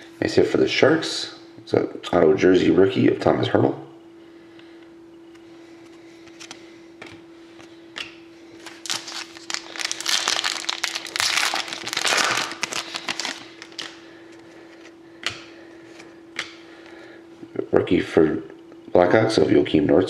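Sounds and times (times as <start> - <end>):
plastic packaging crinkling: 8.6 - 14.0.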